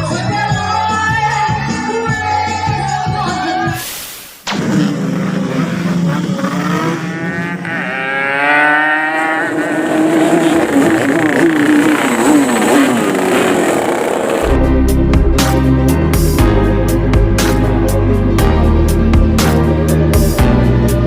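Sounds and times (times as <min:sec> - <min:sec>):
two-stroke motorcycle engines revving: 0:04.5 - 0:21.0.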